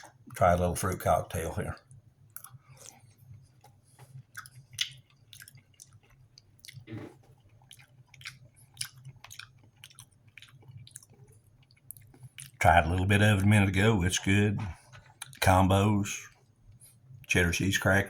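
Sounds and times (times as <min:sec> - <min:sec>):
faint low hum: 0:00.0 - 0:18.0
man chewing with wet mouth smacks: 0:01.8 - 0:13.5, 0:14.7 - 0:15.5.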